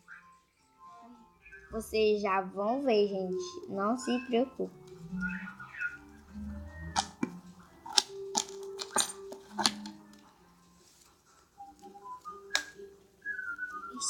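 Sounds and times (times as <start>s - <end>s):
faint steady tones: 0.0s - 14.0s
objects being handled clicking: 6.9s - 10.2s, 12.5s - 12.8s.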